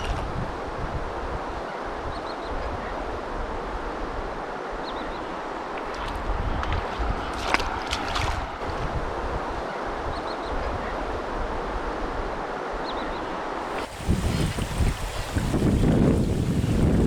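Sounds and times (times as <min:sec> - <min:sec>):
wind buffeting microphone: 0:00.0 - 0:04.4, 0:05.9 - 0:12.4, 0:13.6 - 0:17.0
surf rushing: 0:13.6 - 0:17.0.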